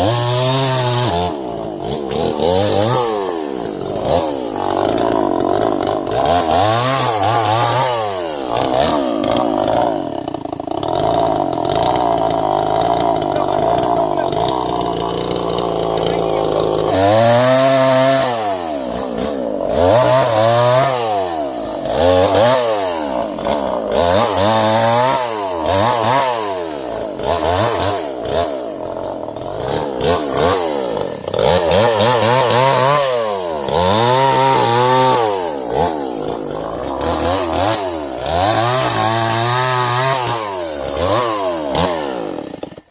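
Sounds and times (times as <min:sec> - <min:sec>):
chainsaw cutting wood revving: 0:00.0 - 0:42.9.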